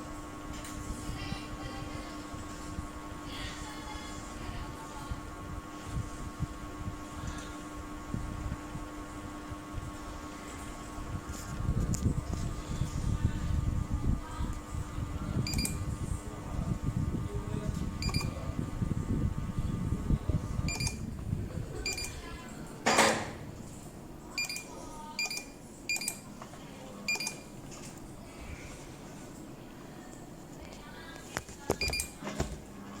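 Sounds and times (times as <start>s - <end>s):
short high beeps: 18.0s - 18.3s, 20.7s - 21.0s.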